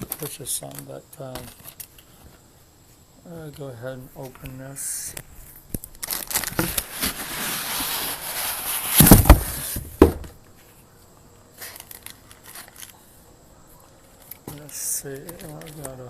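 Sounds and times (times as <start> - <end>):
cardboard flaps rustling and scraping: 6.0 - 10.8.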